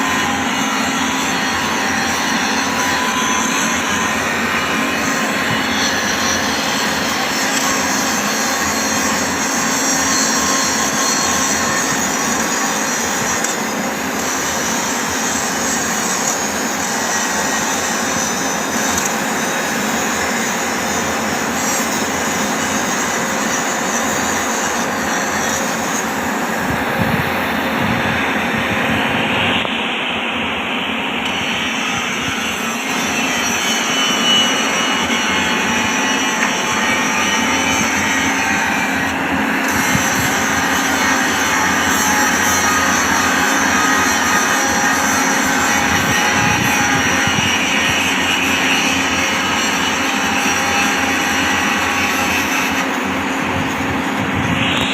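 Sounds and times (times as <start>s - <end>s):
power grinder grinding steel: 0.0s - 30.4s, 31.1s - 54.9s.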